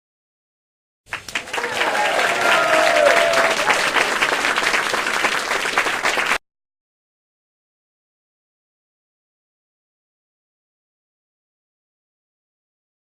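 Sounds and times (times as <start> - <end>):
crowd applause: 1.1 - 6.4
faint cheering voices: 1.2 - 6.2.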